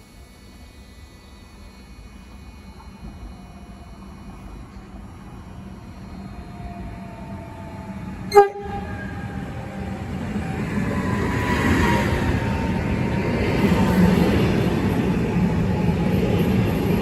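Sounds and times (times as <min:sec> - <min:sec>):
train rumbling: 0:00.7 - 0:17.0
short train horn toot: 0:08.3 - 0:09.1.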